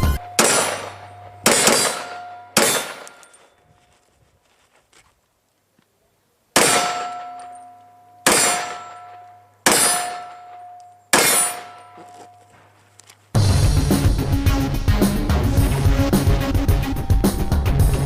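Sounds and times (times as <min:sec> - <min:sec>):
metallic clangs ringing: 0:00.1 - 0:03.6, 0:06.6 - 0:12.6.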